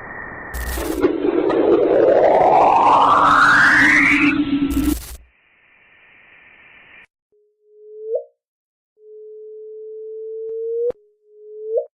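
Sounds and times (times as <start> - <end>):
low tone with upward sweep: 0.0 - 5.2.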